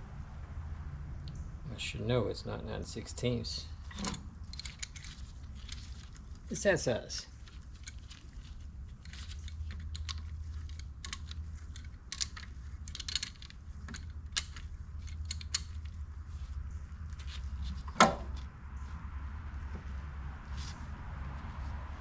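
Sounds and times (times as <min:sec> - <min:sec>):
wrench clicking on metal: 0:09.1 - 0:16.0.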